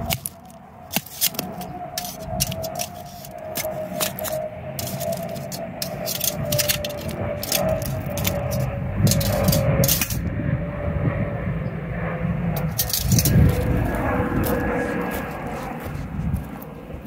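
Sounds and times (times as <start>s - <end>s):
sharp crackles and clicks: 0.0s - 10.3s, 12.6s - 15.8s
forge burner roaring: 0.0s - 11.2s, 12.3s - 17.0s.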